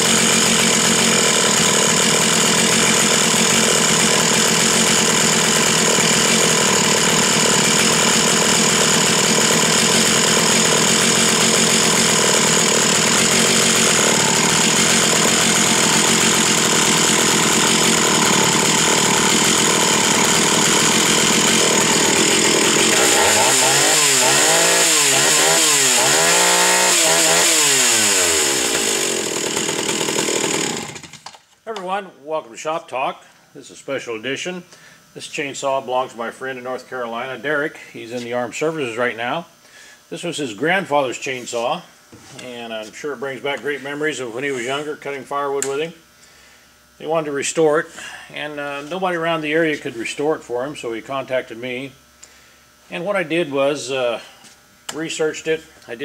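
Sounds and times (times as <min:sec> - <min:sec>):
chainsaw running at high revs: 0:00.0 - 0:31.4.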